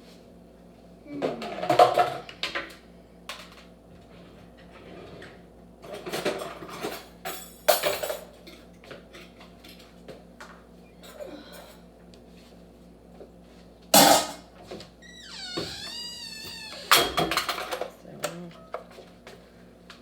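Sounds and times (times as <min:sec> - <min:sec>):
utensils and dishes clattering: 0:05.9 - 0:09.4.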